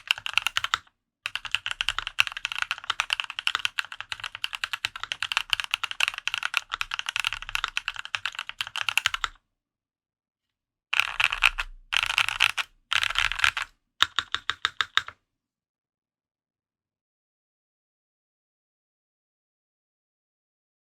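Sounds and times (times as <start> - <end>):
typing on mechanical keyboard: 0.0 - 9.4, 11.0 - 15.2.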